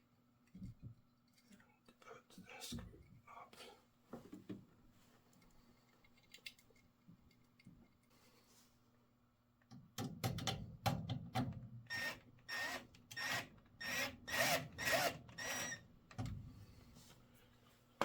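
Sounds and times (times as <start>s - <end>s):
screw turning with squeaks: 11.9s - 15.8s.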